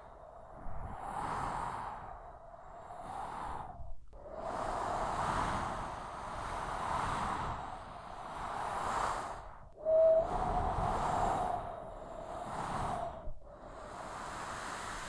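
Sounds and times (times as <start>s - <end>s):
whistling wind howl: 0.0s - 15.0s
gusting windstorm: 4.4s - 15.0s.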